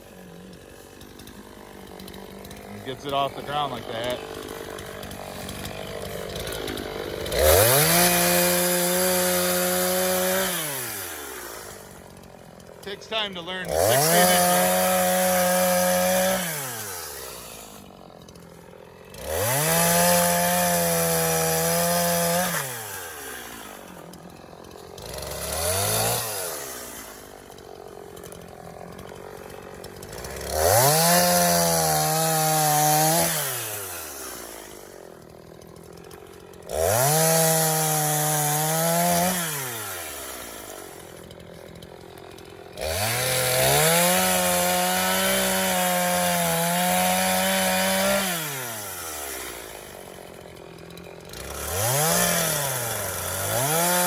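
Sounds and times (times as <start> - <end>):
chainsaw cutting log: 0.0 - 54.0.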